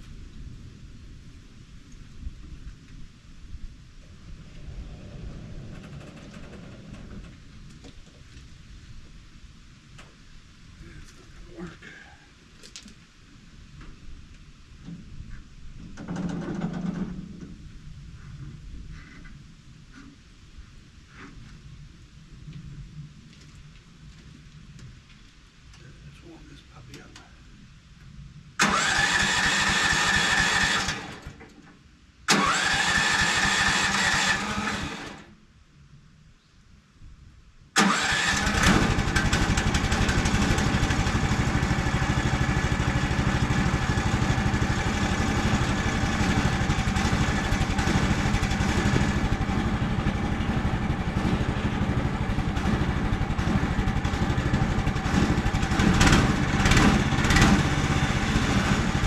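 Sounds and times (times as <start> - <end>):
gasoline engine running: 28.6 - 31.4, 32.3 - 35.2, 37.8 - 59.0
electric starter whining and cranking: 28.6 - 31.5, 32.3 - 35.3, 37.8 - 59.0.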